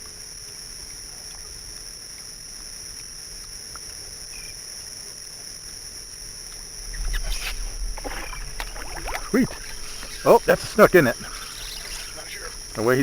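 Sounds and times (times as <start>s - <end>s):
high-pitched insect chorus: 0.0s - 13.0s
water splashes: 6.2s - 13.0s
low rumble: 6.5s - 11.4s.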